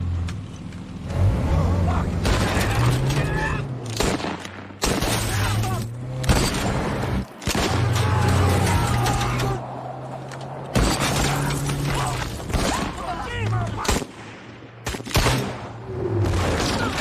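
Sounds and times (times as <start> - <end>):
raised voices: 7.6 - 9.7.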